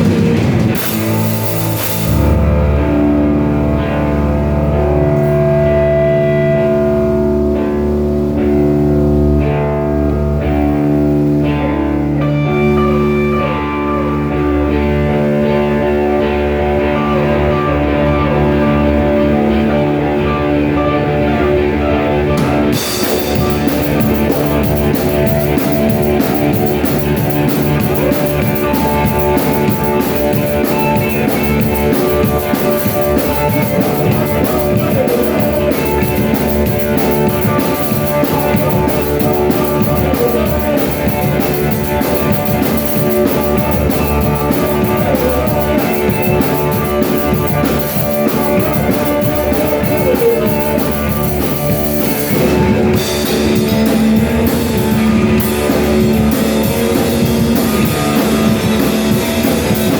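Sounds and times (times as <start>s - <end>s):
rock music with guitar and drums: 0.0s - 20.8s, 21.4s - 59.9s
cymbals or hi-hat: 0.8s - 2.4s, 22.8s - 59.9s.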